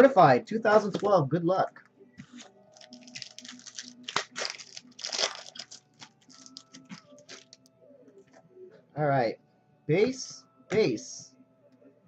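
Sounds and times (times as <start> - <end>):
wrapper being torn and crinkled: 2.4 - 7.6.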